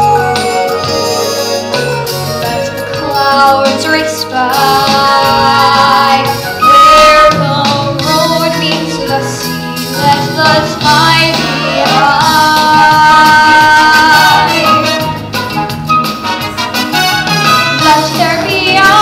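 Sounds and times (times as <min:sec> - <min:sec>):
instrumental accompaniment: 0:00.0 - 0:19.0
young voices singing: 0:03.2 - 0:15.0, 0:17.8 - 0:19.0.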